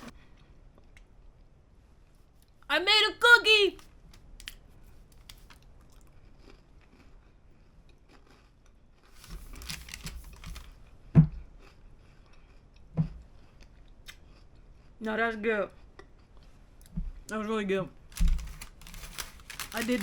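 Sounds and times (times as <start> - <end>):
person chewing crunchy cookie: 4.2 - 15.0.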